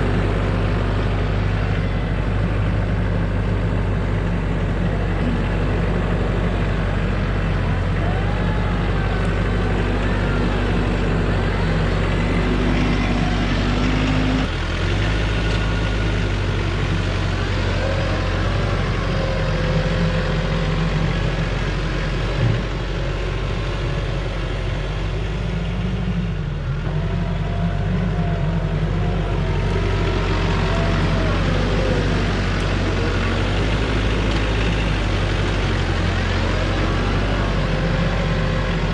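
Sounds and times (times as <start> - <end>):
heavy vehicle engine running: 0.0 - 38.9.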